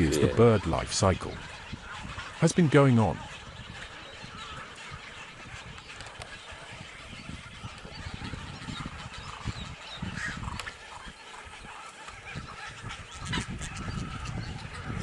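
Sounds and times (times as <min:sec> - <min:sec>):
wild birds calling: 0:00.0 - 0:15.0.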